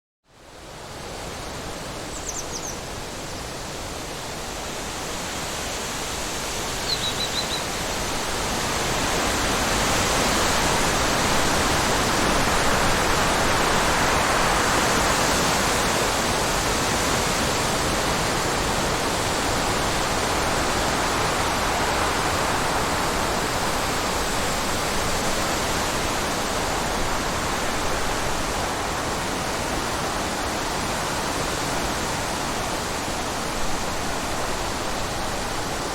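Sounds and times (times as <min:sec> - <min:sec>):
faint high chirps: 0:06.9 - 0:07.7.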